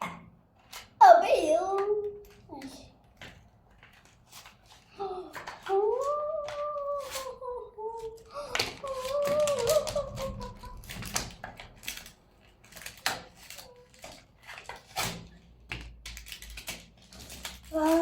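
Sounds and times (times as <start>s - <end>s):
plastic packaging clicks and taps: 5.3s - 6.8s, 8.1s - 18.0s.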